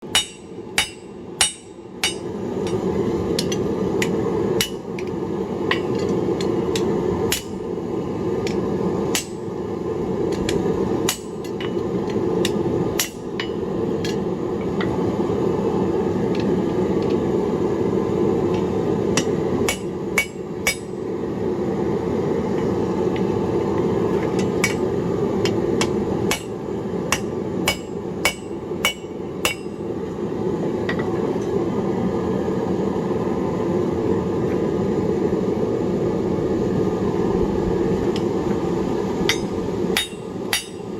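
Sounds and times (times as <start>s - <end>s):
hammer striking tongs on anvil: 0.1s - 2.8s, 3.4s - 5.1s, 5.7s - 7.6s, 8.5s - 9.4s, 10.3s - 14.2s, 19.2s - 20.9s, 24.3s - 24.8s, 25.4s - 29.8s, 39.3s - 40.9s.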